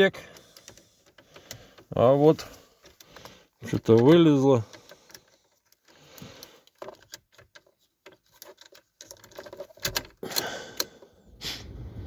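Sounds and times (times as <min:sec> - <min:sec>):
handling clicks and rattles: 0:00.0 - 0:11.1.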